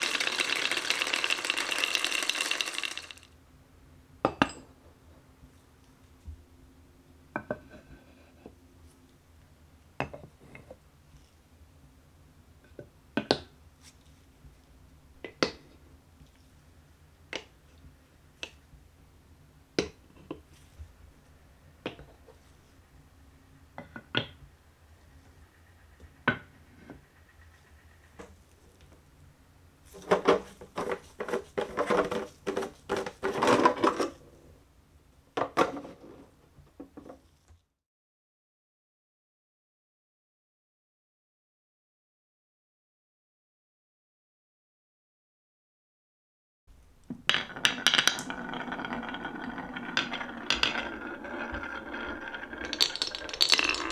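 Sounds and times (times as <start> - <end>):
marbles clattering down wooden run: 0.0 - 3.3, 30.0 - 34.0, 47.3 - 53.9.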